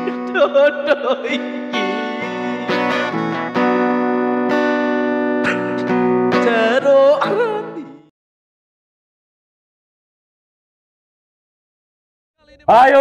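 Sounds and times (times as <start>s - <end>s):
person singing: 0.0s - 4.0s, 5.4s - 8.1s
acoustic guitar strumming: 0.0s - 8.1s.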